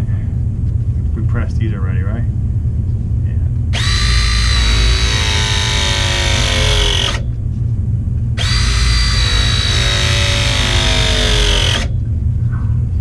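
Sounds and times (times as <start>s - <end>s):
steady low hum: 0.0s - 13.0s
pressing tool motor whining: 3.8s - 7.3s, 8.4s - 12.0s.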